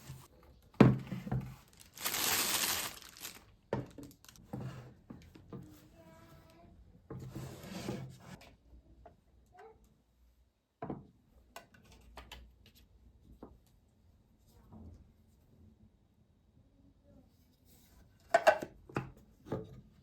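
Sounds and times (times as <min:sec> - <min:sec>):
rubbing or scraping: 0:01.4 - 0:03.4.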